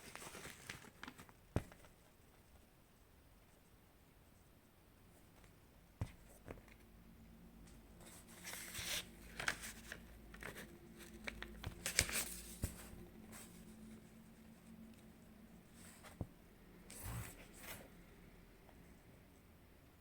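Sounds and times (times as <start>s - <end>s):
rustling crinkling noise: 0.0s - 2.6s, 7.6s - 17.9s.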